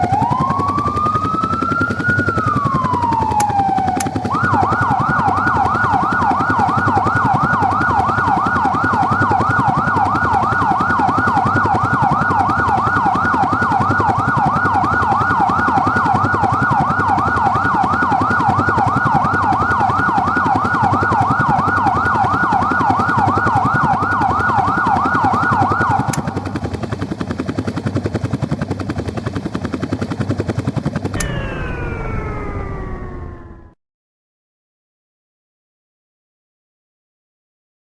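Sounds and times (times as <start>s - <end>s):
electronic yelp siren: 0.0s - 27.0s, 31.0s - 33.8s
helicopter rotor chopping: 0.0s - 33.8s
turbine winding down: 31.0s - 33.8s.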